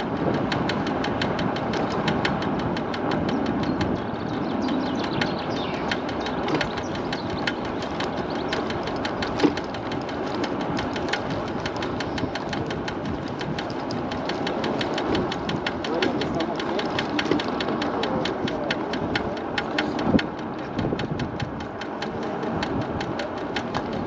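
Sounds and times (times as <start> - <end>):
road and wind noise: 0.0 - 24.0
scooter wheel ticking knock: 0.0 - 24.0.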